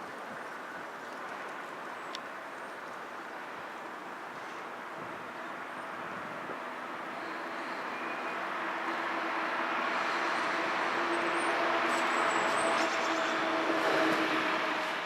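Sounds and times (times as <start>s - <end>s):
vehicle passing: 8.5s - 15.0s.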